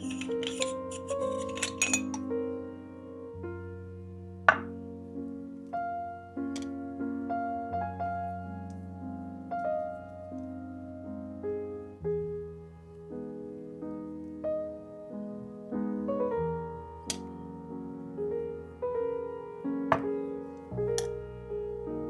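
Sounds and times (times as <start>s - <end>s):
slow piano music: 0.0s - 22.0s.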